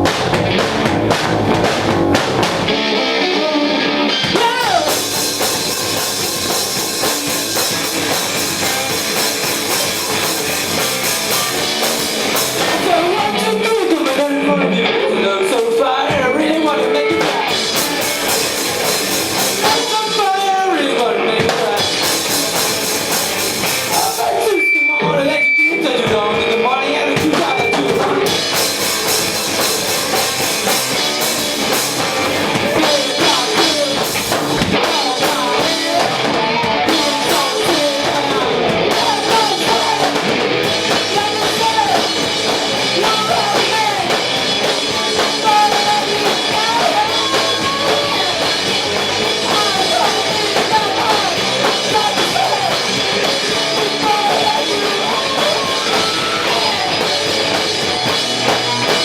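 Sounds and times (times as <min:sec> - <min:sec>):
drum kit: 0:00.0 - 0:14.7, 0:16.0 - 0:24.6, 0:26.0 - 0:59.0
electric guitar: 0:00.0 - 0:59.0
person singing: 0:12.6 - 0:18.3, 0:23.8 - 0:28.6, 0:31.7 - 0:59.0.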